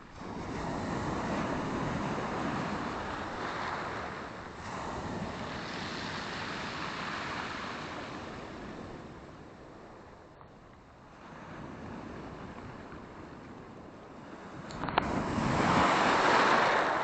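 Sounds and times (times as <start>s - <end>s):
waves washing on shore: 0.0s - 10.2s, 11.0s - 17.0s.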